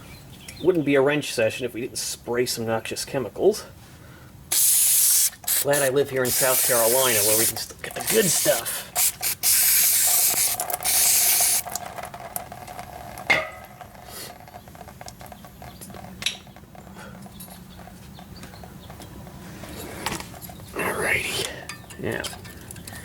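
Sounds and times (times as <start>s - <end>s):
aerosol can spraying: 4.5s - 11.6s.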